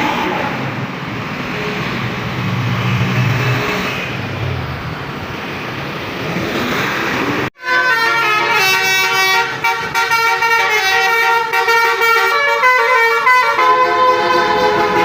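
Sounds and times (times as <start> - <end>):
musical bus horn tune: 7.6 - 15.0.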